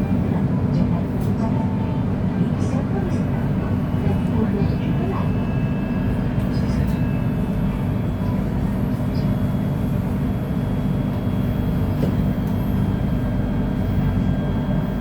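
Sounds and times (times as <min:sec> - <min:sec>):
train low rumble: 0:00.0 - 0:15.0.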